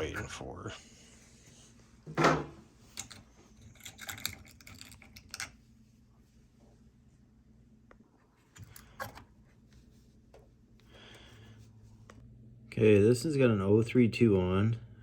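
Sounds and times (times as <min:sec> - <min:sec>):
faint low hum: 0:00.0 - 0:15.0
small parts clicking and tapping: 0:02.9 - 0:05.6.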